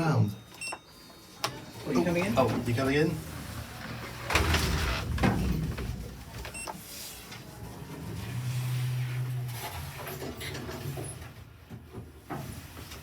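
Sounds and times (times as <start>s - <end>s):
lift drive humming: 1.9s - 6.7s
lift doors knocking shut: 3.4s - 6.6s.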